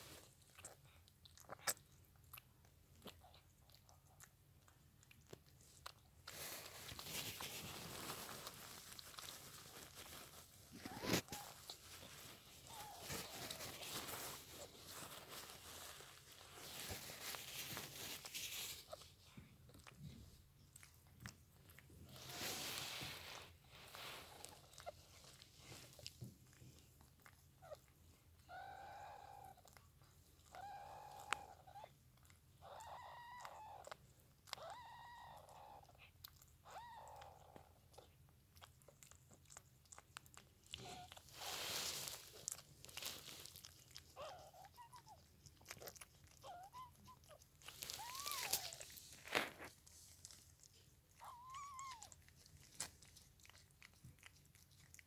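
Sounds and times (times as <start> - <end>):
rustling noises: 5.3 - 28.0, 40.0 - 55.0
kitten meowing: 46.4 - 48.9, 51.2 - 52.2.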